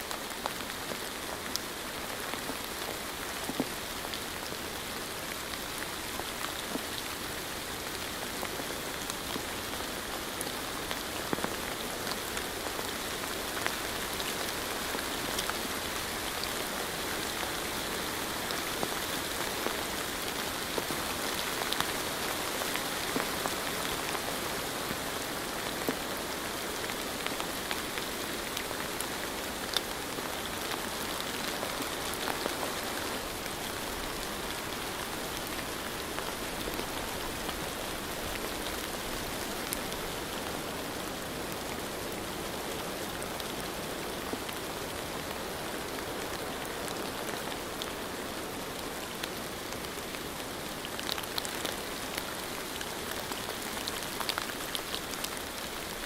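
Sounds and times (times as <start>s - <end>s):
steady rain falling: 0.0s - 56.0s
raindrops ticking: 30.5s - 40.9s.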